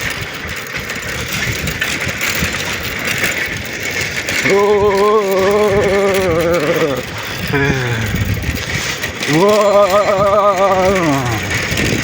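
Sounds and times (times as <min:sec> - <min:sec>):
bicycle freewheel ticking: 0:00.0 - 0:12.0
wind and tyre rush: 0:00.0 - 0:12.0.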